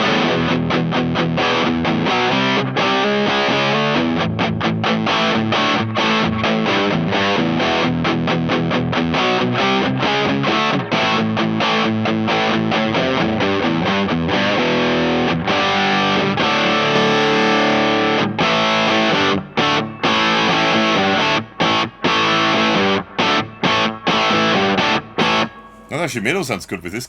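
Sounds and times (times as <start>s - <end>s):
distorted electric guitar chords: 0.0s - 25.9s.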